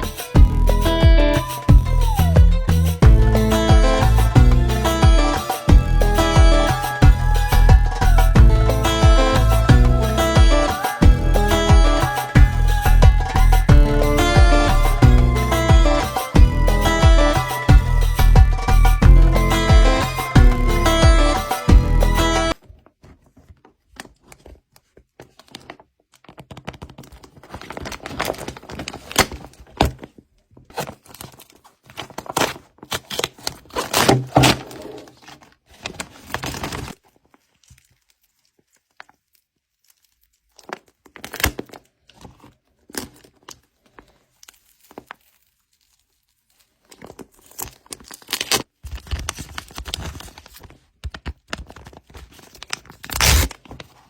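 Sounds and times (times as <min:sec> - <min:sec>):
paper crinkling and tearing: 0:22.5 - 0:54.0.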